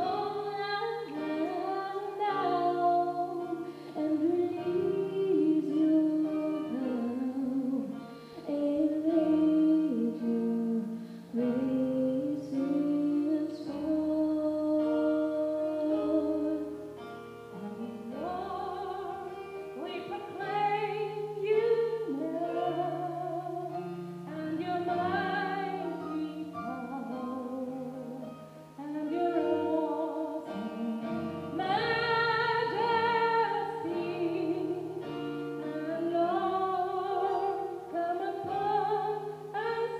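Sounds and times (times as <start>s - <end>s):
women singing gospel: 28.8s - 39.9s.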